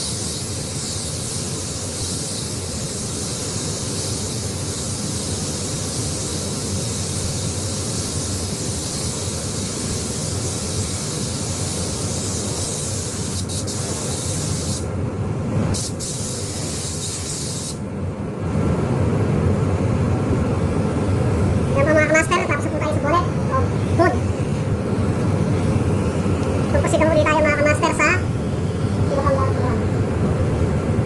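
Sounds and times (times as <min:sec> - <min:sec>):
air spray gun hissing: 0:00.0 - 0:14.9, 0:15.7 - 0:17.8
low running noise: 0:17.8 - 0:31.0.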